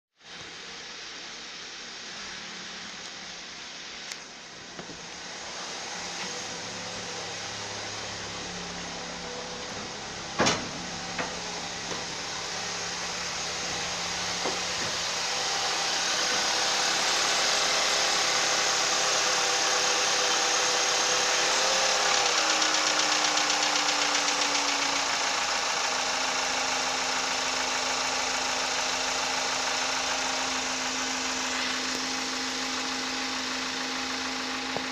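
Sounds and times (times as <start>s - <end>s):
car engine idling: 0.3s - 34.9s
engine knocking: 10.0s - 34.9s.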